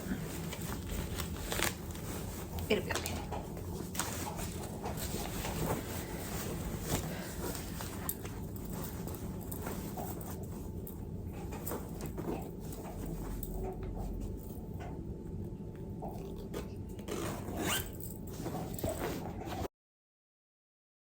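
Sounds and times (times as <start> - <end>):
fabric rustling: 0.0 - 14.6, 17.1 - 19.7
zip being pulled: 17.1 - 18.0.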